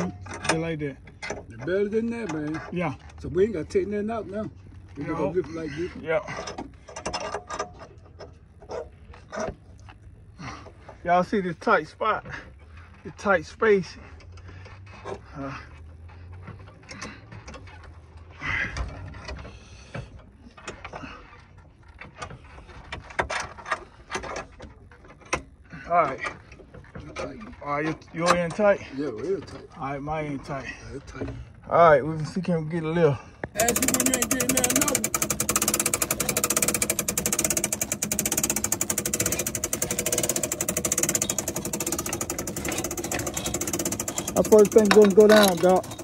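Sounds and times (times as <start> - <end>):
metal scraping rattle: 0.0 - 9.8, 33.6 - 46.0
metal equipment clicks and knocks: 6.3 - 9.6, 33.6 - 46.0.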